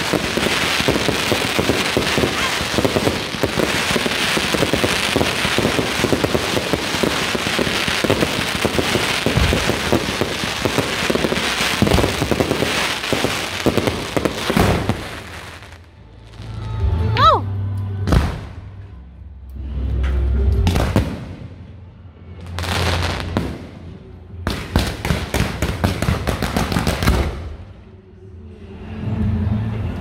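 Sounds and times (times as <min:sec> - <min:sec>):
firecrackers popping: 0:00.0 - 0:16.6, 0:20.7 - 0:21.4, 0:24.5 - 0:27.5.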